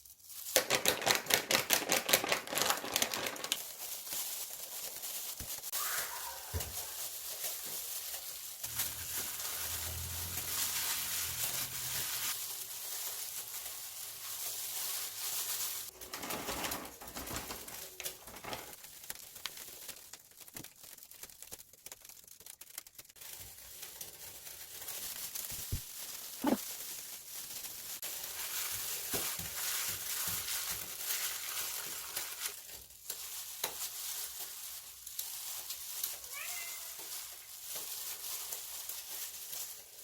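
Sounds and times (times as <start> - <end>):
food sizzling in a pan: 5.2 - 16.0.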